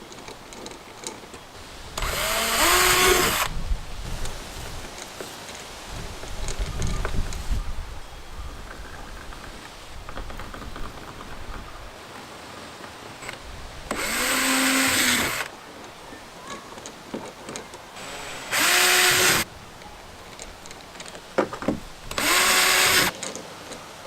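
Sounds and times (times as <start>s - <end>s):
power drill drilling into plastic: 2.0s - 3.5s, 13.9s - 15.5s, 18.0s - 19.5s, 22.1s - 23.1s.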